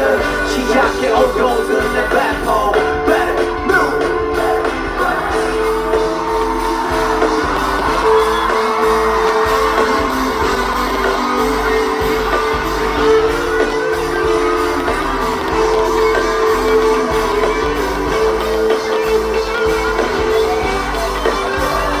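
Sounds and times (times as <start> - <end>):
crowd shouting and whooping: 0.0 - 22.0
loud live pop concert music: 0.0 - 22.0
person singing: 0.0 - 22.0.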